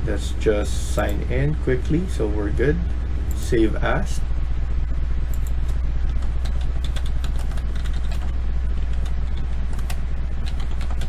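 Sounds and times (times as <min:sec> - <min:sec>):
low electrical hum: 0:00.0 - 0:11.0
keyboard and mouse clicking: 0:01.0 - 0:01.2, 0:05.3 - 0:11.0.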